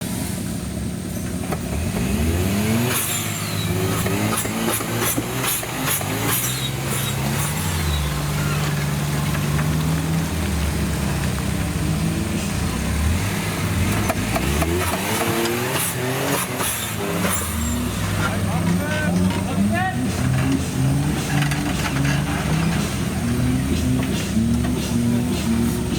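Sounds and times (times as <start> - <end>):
engine revving: 0.0 - 25.9
sharp clicks and knocks: 13.9 - 25.9.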